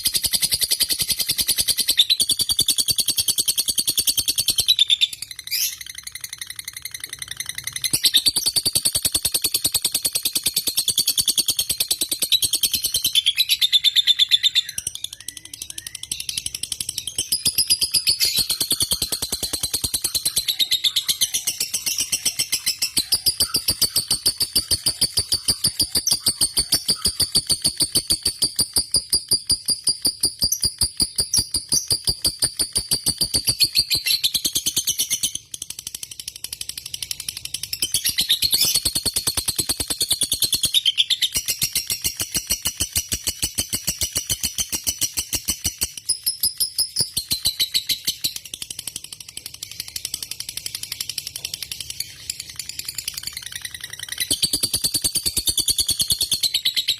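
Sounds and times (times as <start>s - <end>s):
lovebird trilling chatter: 17.2s - 34.3s.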